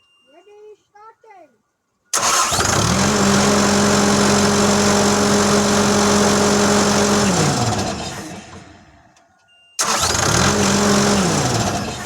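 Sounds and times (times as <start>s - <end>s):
engine cranking: 2.1s - 8.9s, 9.8s - 12.0s.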